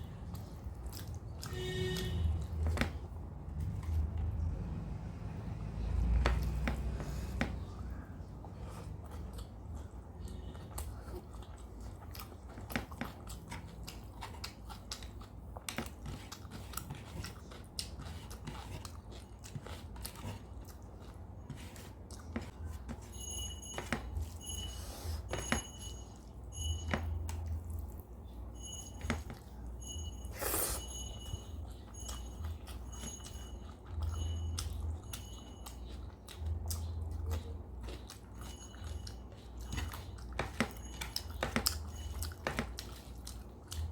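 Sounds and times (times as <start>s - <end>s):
low steady hum: 0.0s - 43.9s
person chewing food: 0.0s - 43.9s.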